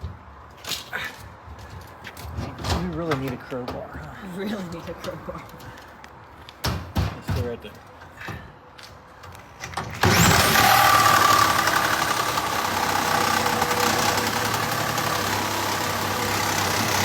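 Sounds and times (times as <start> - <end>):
power tool cutting metal: 10.0 - 17.0.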